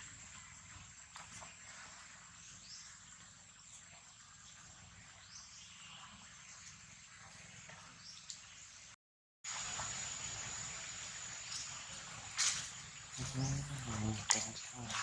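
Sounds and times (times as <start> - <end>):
outdoor background hiss: 9.5 - 15.0.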